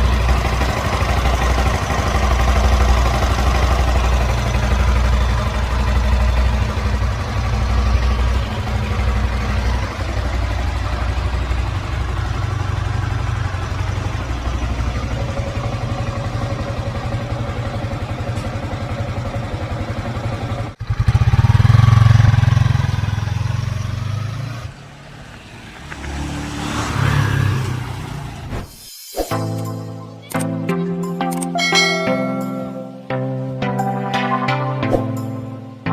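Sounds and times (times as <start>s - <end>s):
motorcycle engine revving: 0.0s - 28.5s.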